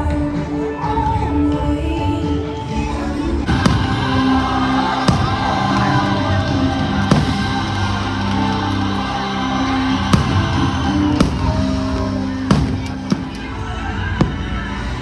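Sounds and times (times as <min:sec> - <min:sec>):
firework bangs: 0:03.5 - 0:15.0
orchestral music: 0:03.5 - 0:15.0.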